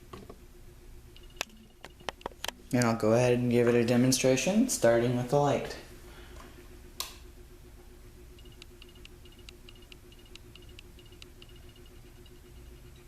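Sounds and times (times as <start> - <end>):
faint steady hum: 0.0 - 13.0
sharp click of fan control: 7.0 - 7.3
faint high chirps and ticks: 8.3 - 13.0.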